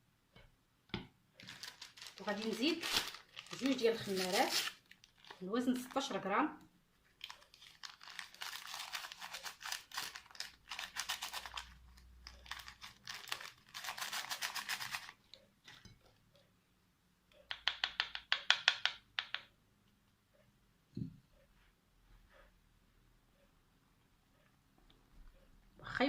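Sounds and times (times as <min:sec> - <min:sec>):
paper sachets tearing and crinkling: 0:01.4 - 0:06.1, 0:07.2 - 0:15.2.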